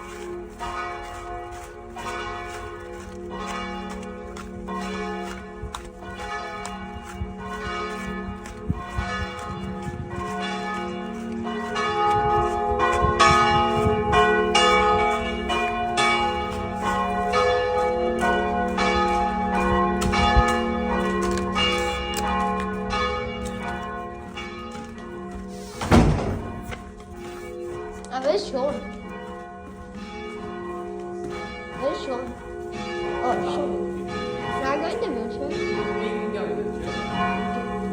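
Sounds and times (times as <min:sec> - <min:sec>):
church bells ringing: 0:00.0 - 0:37.9
loud thud: 0:25.8 - 0:26.6.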